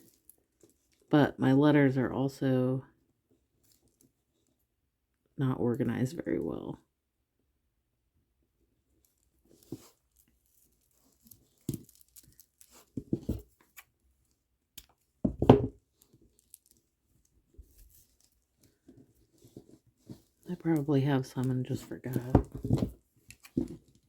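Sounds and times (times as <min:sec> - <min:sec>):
plastic beads scraping and clicking: 0:09.0 - 0:13.9, 0:15.9 - 0:19.5, 0:20.1 - 0:24.0.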